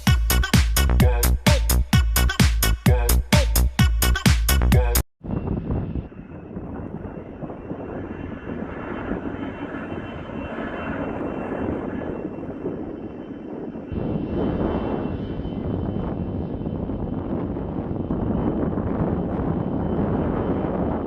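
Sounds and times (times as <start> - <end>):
jet engines running: 5.3 - 21.0.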